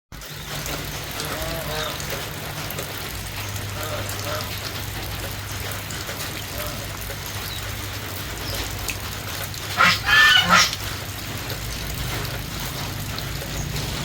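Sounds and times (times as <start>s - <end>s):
chicken calling: 9.7s - 10.8s.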